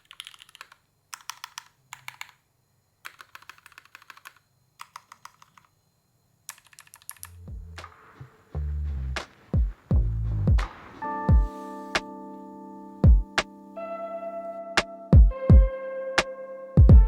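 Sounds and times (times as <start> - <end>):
mechanical keyboard typing: 0.0 - 2.4, 3.0 - 5.7, 6.5 - 7.4
electronic music with pulsing beat: 7.3 - 17.0.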